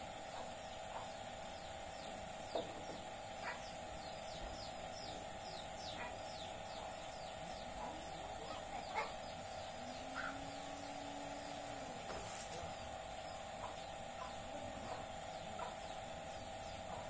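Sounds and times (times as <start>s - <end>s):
birds chirping: 0.0s - 17.0s
steady hum: 0.0s - 17.0s.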